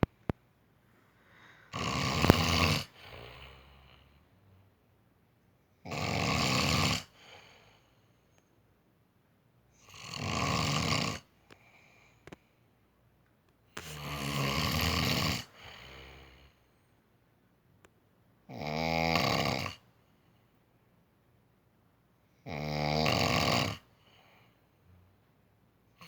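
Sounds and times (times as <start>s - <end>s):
man snoring loudly: 1.7s - 4.0s, 5.9s - 7.6s, 9.8s - 11.3s, 13.8s - 16.5s, 18.5s - 19.8s, 22.5s - 23.9s.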